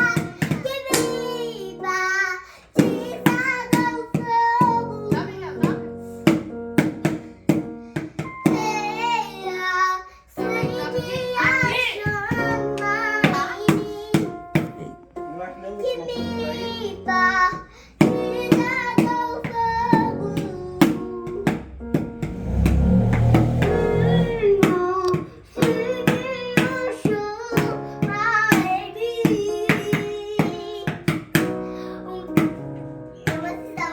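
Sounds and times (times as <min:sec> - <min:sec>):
child singing: 0:00.0 - 0:06.3, 0:08.2 - 0:15.0, 0:15.6 - 0:21.6, 0:24.0 - 0:33.9
sharp percussive knocks: 0:18.0 - 0:27.7
low thumping: 0:21.8 - 0:25.2.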